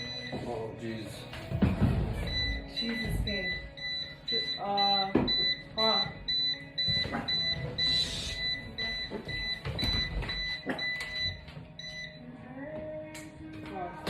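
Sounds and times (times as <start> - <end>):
rapid high-pitched warning beeps: 2.2 - 12.2.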